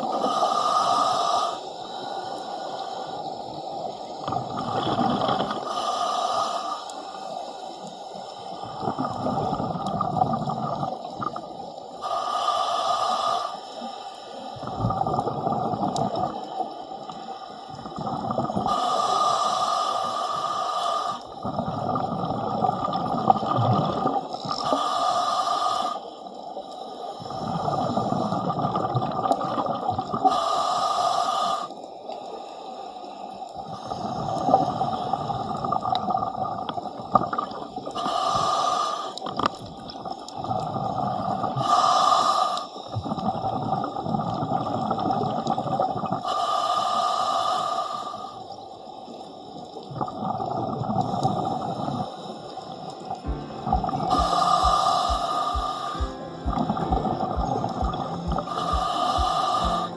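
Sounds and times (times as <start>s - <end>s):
regulator inhalation hiss: 0.1s - 3.3s, 5.6s - 8.6s, 12.0s - 14.5s, 18.6s - 21.4s, 24.6s - 28.3s, 30.2s - 33.2s, 38.0s - 39.3s, 41.6s - 42.9s, 46.2s - 48.6s, 53.3s - 56.4s, 57.2s - 59.9s
exhaled bubbles burbling: 4.2s - 5.6s, 8.6s - 11.6s, 14.6s - 16.5s, 17.8s - 18.7s, 21.4s - 24.6s, 27.3s - 30.2s, 34.0s - 37.9s, 43.0s - 46.2s, 49.8s - 52.1s, 53.2s - 59.9s.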